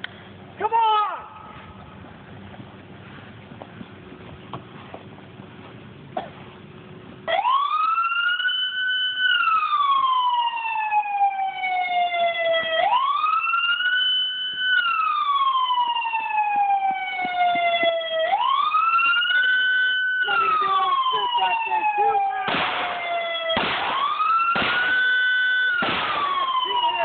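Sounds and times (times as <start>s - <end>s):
wailing siren: 7.3s - 27.0s.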